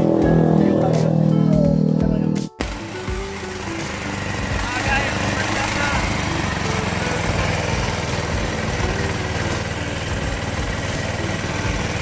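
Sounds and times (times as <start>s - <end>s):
diesel engine idling: 2.6s - 12.0s.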